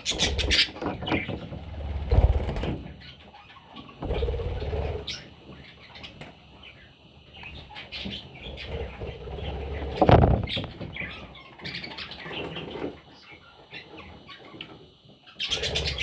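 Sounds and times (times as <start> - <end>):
parrot chicks chirping: 0.0 - 16.0.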